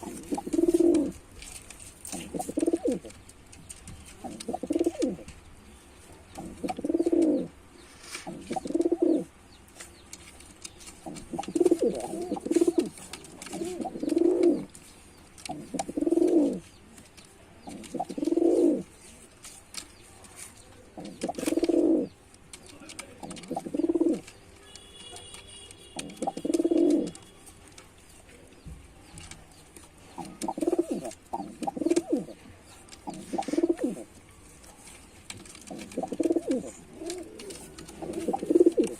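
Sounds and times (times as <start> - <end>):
pigeon cooing: 0.0 - 1.2, 2.1 - 3.1, 4.2 - 5.3, 6.4 - 7.6, 8.2 - 9.3, 11.0 - 14.7, 15.5 - 16.7, 17.6 - 19.0, 21.0 - 22.2, 23.2 - 24.3, 26.0 - 27.2, 30.1 - 34.1, 35.6 - 38.9.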